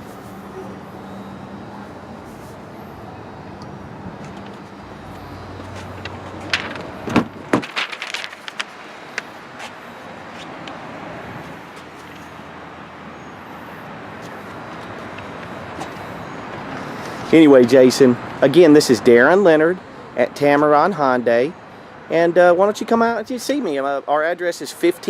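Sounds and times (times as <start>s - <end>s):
car door thumps: 7.0s - 7.8s.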